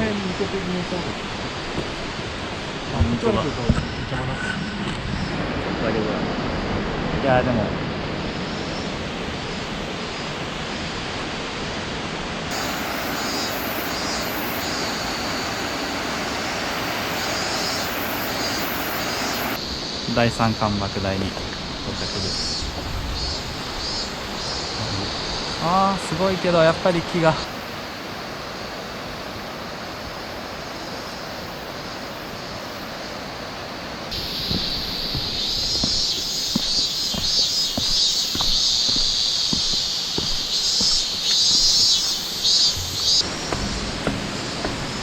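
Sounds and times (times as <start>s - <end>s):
waterfall roaring: 10.9s - 19.6s, 34.1s - 41.0s, 42.7s - 45.0s.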